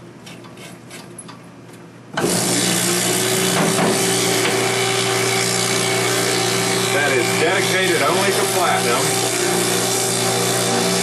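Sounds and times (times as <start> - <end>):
polishing motor humming: 2.2 - 11.0.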